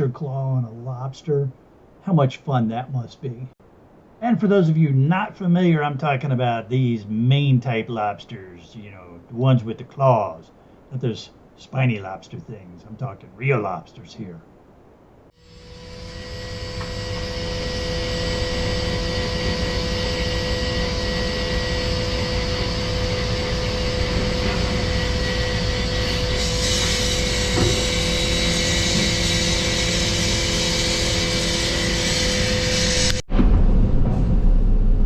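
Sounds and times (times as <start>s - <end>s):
high hiss: 0.0s - 33.2s
heavy machinery engine rumble: 16.7s - 29.4s.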